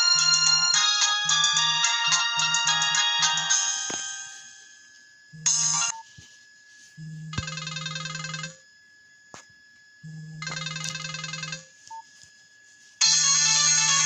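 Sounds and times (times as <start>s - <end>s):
phone ringtone trill: 0.0s - 4.6s, 5.4s - 6.0s, 7.4s - 8.6s, 10.4s - 11.8s, 13.0s - 14.0s
melodic ringtone: 0.0s - 4.7s, 7.4s - 8.6s, 10.4s - 11.7s
low buzz: 3.8s - 6.3s.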